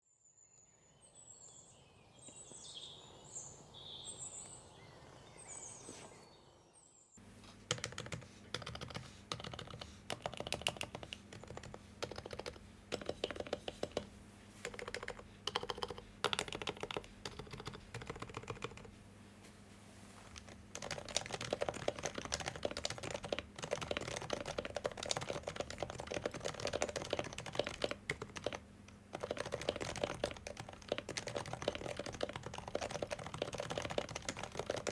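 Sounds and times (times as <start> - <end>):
soft keyboard typing: 7.4 - 18.9, 20.2 - 34.9.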